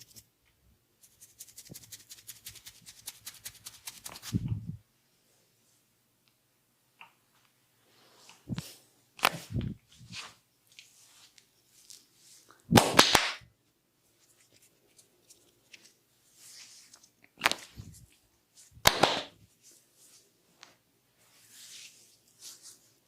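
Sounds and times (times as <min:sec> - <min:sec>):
hands rubbing hair and skin: 0:01.0 - 0:04.7, 0:08.0 - 0:13.4, 0:14.1 - 0:23.0
hands slapping a head: 0:09.2 - 0:09.7, 0:12.7 - 0:13.5, 0:17.4 - 0:17.9, 0:18.8 - 0:19.4.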